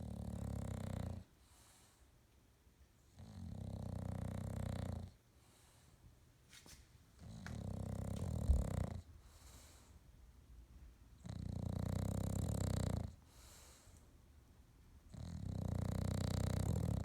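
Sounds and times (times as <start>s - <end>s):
dog snoring: 0.0s - 1.7s, 3.1s - 5.2s, 7.2s - 9.8s, 11.2s - 14.0s, 15.1s - 17.0s
quiet breathing: 0.9s - 2.3s, 5.1s - 6.2s, 7.2s - 10.3s, 13.0s - 14.3s.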